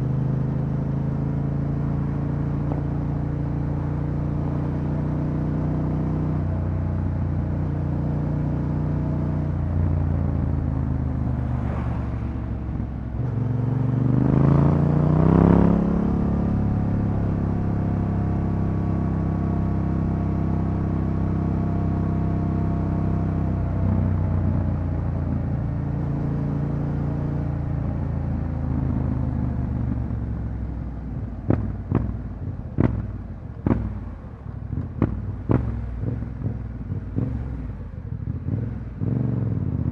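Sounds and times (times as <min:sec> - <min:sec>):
motorcycle engine running: 0:27.6 - 0:39.9.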